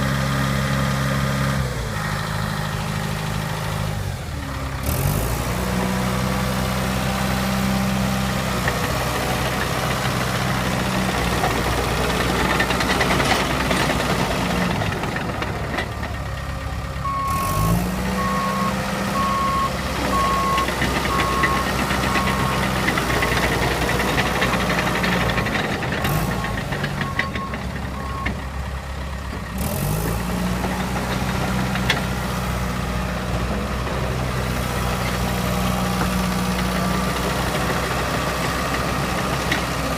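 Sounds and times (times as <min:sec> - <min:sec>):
bulldozer diesel engine running: 0:00.0 - 0:39.9
reversing alarm beeping: 0:17.0 - 0:22.8, 0:27.0 - 0:28.4.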